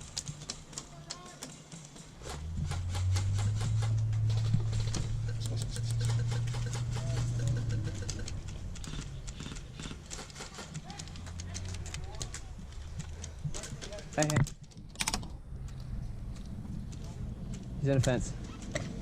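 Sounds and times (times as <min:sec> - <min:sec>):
steady low buzz: 0:02.4 - 0:10.0.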